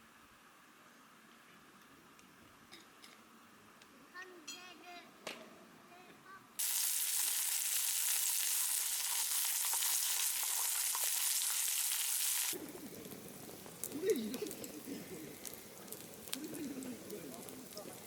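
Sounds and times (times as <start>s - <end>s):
loud sizzling with crackles: 6.6s - 18.0s
bird cooing: 13.9s - 15.6s.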